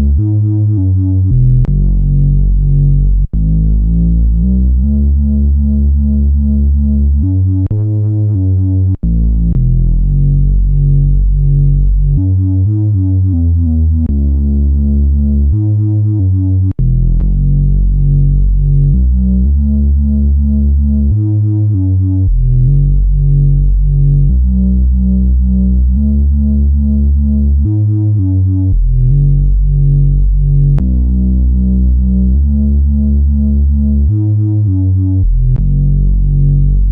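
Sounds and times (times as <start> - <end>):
synthesizer bass sequence: 0.0 - 36.9.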